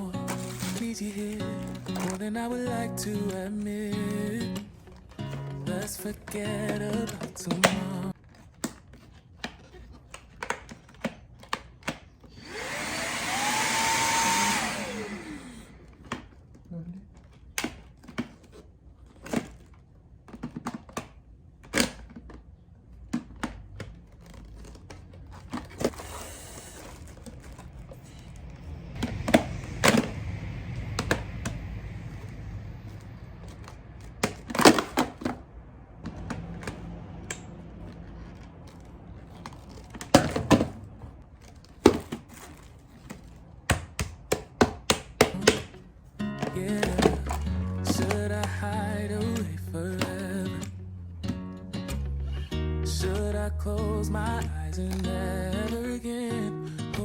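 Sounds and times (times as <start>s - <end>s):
rustling and crinkling: 4.6s - 12.3s, 15.8s - 30.3s, 32.0s - 44.6s.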